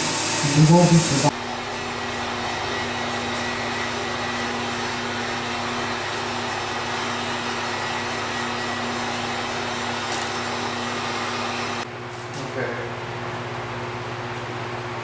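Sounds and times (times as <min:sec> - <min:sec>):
electric blower motor whirring: 0:00.0 - 0:12.0.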